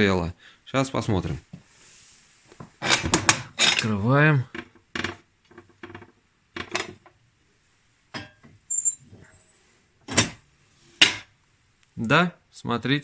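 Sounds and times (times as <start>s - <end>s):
metal stove door clanking: 8.2s - 8.5s, 10.1s - 10.4s
high squeak: 8.7s - 9.6s.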